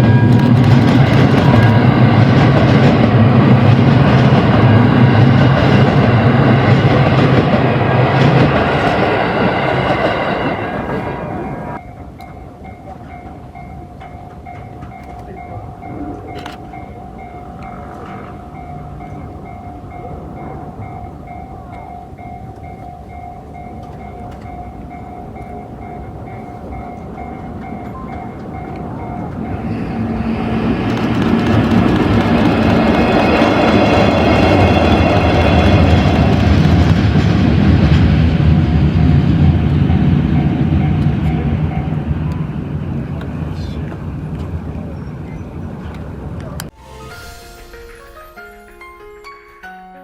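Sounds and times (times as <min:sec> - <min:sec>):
train wheels clacking over rail joints: 0:00.0 - 0:10.5, 0:12.2 - 0:39.2
level crossing bell ringing: 0:11.8 - 0:30.3, 0:46.7 - 0:50.0.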